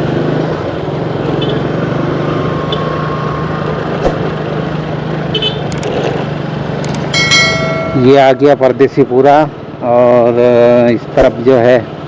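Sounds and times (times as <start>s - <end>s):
road and wind noise: 0.0s - 12.0s
sharp click: 6.8s - 7.1s.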